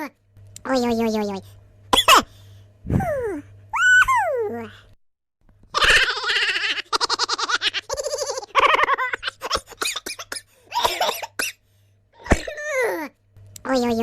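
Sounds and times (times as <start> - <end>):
person laughing: 2.9 - 4.6, 5.7 - 10.3.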